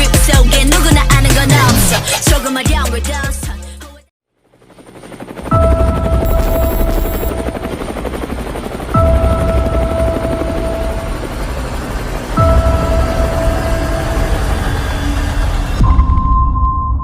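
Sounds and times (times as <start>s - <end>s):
helicopter rotor chopping: 4.4s - 15.8s
held high tone: 6.2s - 7.4s.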